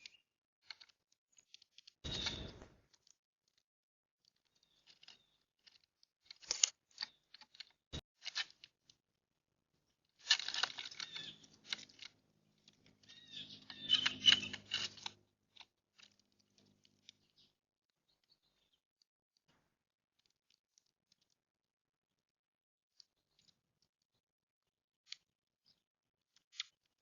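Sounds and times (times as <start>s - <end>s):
birds pecking and rustling: 0.0s - 3.6s, 4.2s - 9.0s, 9.9s - 18.8s, 23.0s - 24.1s
short bird chirps: 2.1s - 2.8s, 11.0s - 11.6s, 13.0s - 15.0s.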